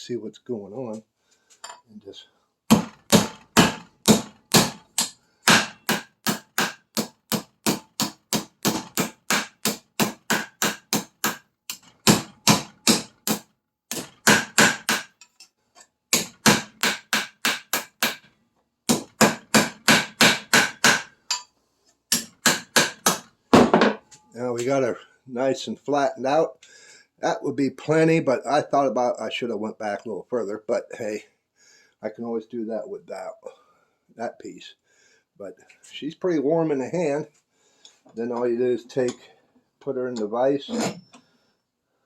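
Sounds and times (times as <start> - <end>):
hammer beating copper pipe: 2.7 - 15.2, 16.1 - 18.3, 18.9 - 21.4, 22.1 - 24.2.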